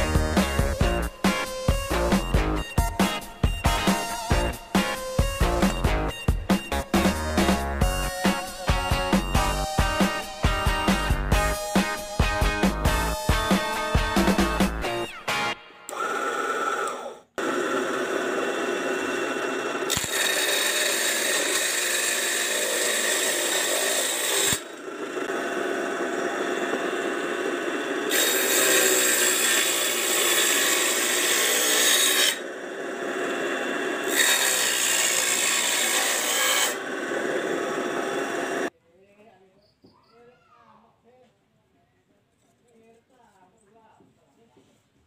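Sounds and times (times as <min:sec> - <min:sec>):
small saw cutting wood: 0:15.9 - 0:38.7.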